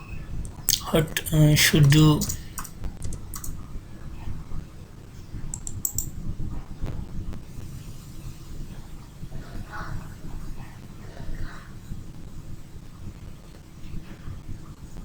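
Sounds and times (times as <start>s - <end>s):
low background hum: 0.0s - 15.0s
computer keyboard tapping: 1.3s - 3.6s, 5.5s - 6.1s.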